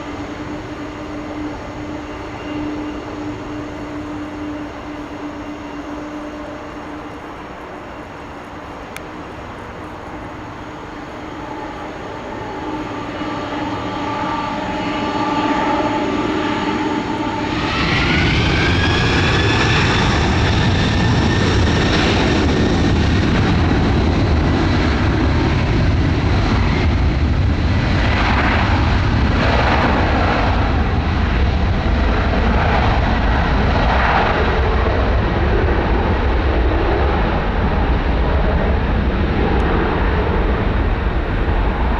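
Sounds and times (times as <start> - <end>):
jet engines taking off: 0.0 - 41.9.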